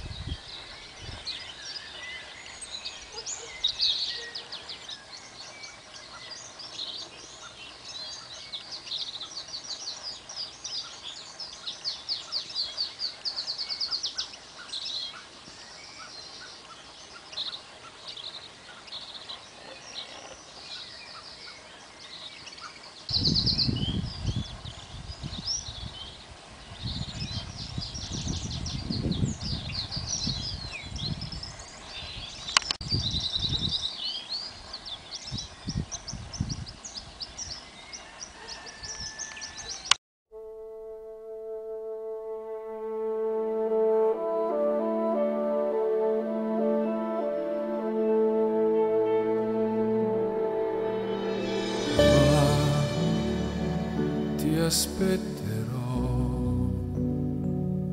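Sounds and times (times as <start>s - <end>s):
small birds singing and chirping: 0.0s - 40.0s.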